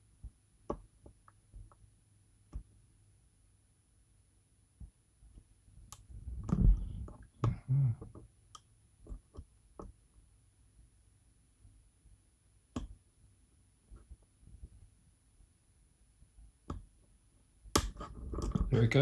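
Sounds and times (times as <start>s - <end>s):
lock pick clicks and taps: 12.7s - 13.0s, 16.7s - 16.9s, 17.7s - 18.6s.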